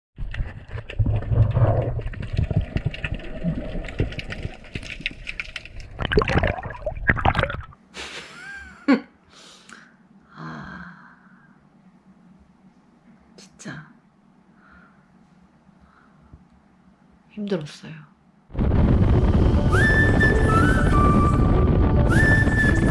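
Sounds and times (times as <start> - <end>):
sea water sloshing and splashing: 0.2 - 7.8.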